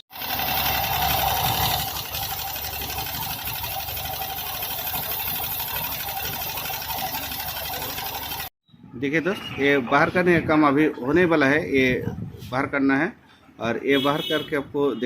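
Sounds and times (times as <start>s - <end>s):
scooter engine idling: 0.1s - 8.5s.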